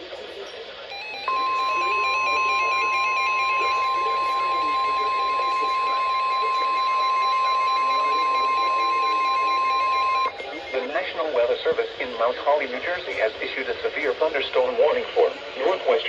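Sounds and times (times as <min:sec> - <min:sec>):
piercing steady alarm beep: 0:00.9 - 0:10.9.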